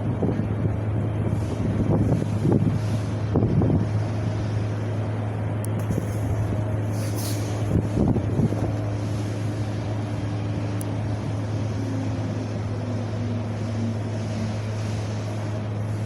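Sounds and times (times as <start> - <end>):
wind blowing: 0.0 - 16.0
wind gusting against microphone: 0.0 - 16.0.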